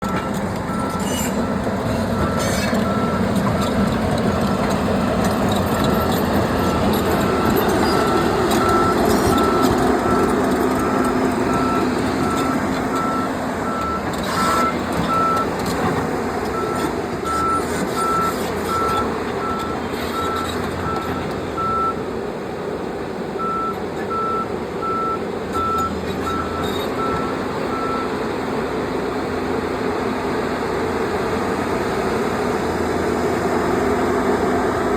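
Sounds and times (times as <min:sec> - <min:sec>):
excavator diesel engine running: 0:00.0 - 0:34.9
travel alarm beeping: 0:05.7 - 0:15.5.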